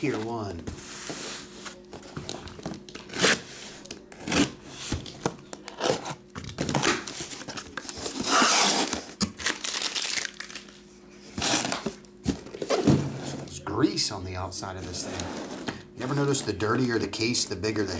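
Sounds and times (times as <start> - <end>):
cardboard packaging tearing: 2.5 - 10.7, 11.4 - 12.9.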